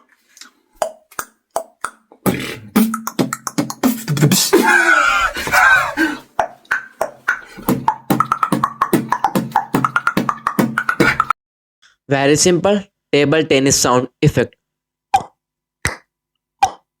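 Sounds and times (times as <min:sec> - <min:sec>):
beatboxed horse clops: 0:00.8 - 0:04.6, 0:05.4 - 0:11.4, 0:15.2 - 0:16.9
wavering vocal passage: 0:02.2 - 0:11.3.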